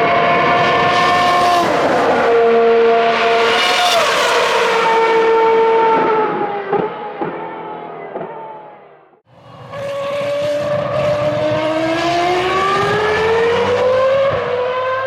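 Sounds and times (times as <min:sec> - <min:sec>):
racing car engine accelerating: 0:09.4 - 0:15.0.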